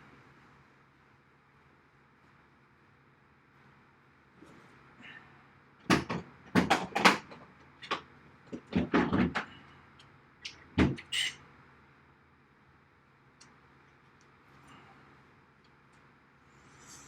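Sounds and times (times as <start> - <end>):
sharp knocks and clatters: 5.8 - 9.6.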